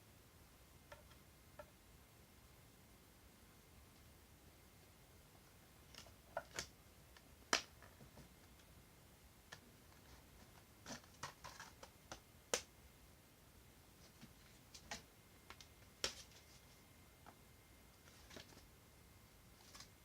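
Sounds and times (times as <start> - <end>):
clicks and taps of objects: 0.9 - 1.7
rustling: 14.0 - 16.9, 19.5 - 20.0.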